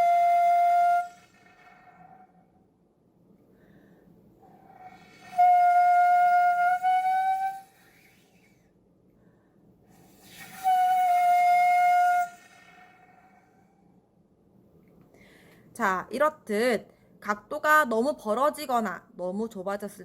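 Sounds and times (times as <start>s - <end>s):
bamboo flute held notes: 0.0s - 2.4s, 4.5s - 8.4s, 10.2s - 13.7s.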